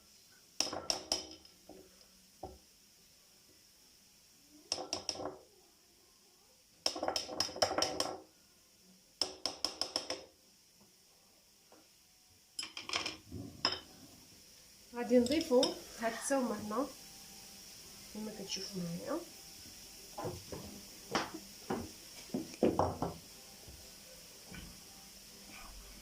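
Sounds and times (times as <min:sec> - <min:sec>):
utensils clinking against dishes: 0:12.6 - 0:13.9.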